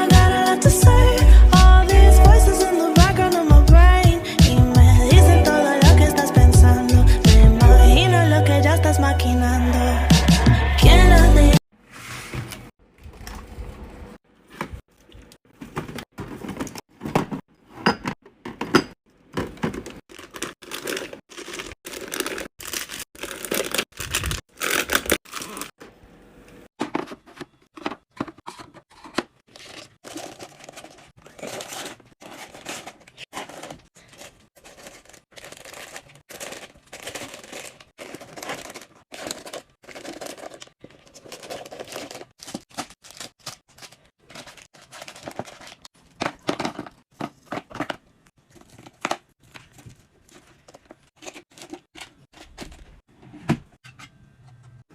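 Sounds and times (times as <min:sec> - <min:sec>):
plastic packaging tearing and crinkling: 0:20.0 - 0:25.7, 0:29.5 - 0:47.0.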